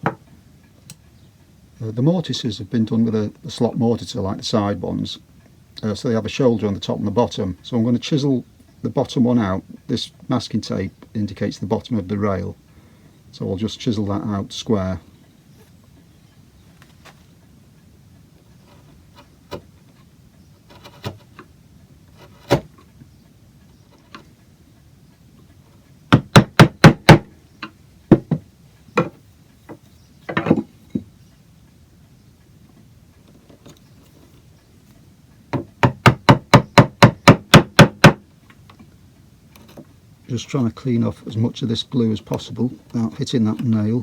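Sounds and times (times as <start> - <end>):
chisel being struck into wood: 26.1 - 27.3, 28.1 - 28.4, 35.5 - 38.2.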